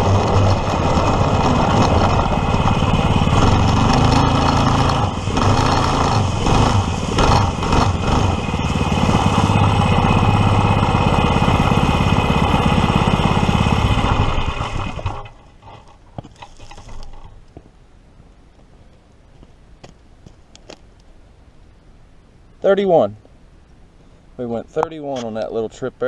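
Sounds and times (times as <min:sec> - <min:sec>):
kart engine running hard: 0:00.0 - 0:15.3.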